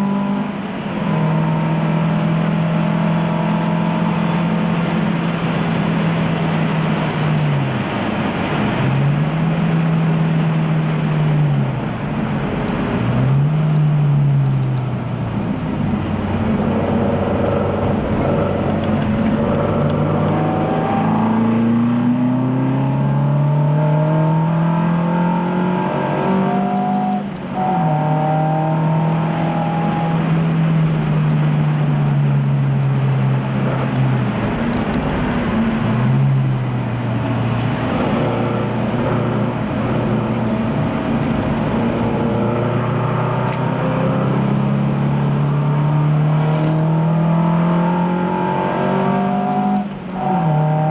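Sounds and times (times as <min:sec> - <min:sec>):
race car engine accelerating: 0:00.0 - 0:50.9.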